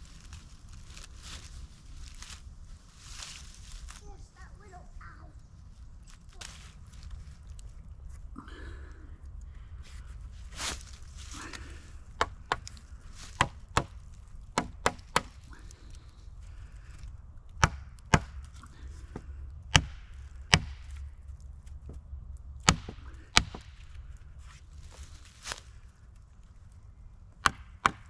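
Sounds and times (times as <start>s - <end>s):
wood chopping strikes: 12.2s - 15.4s, 17.6s - 18.5s, 19.1s - 21.0s, 22.6s - 23.8s, 27.4s - 28.0s.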